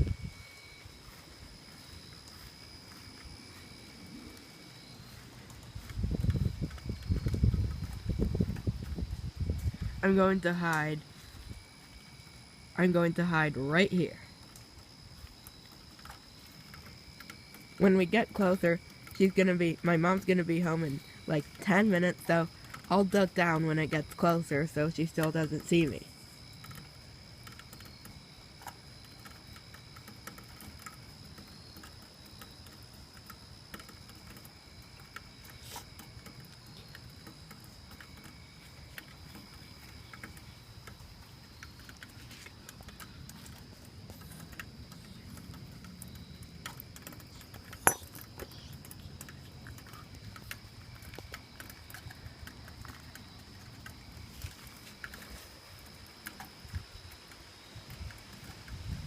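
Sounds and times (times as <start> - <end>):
high insect drone: 0.0 - 59.0
insect chirping: 0.0 - 59.0
small clicks and taps: 26.6 - 58.8.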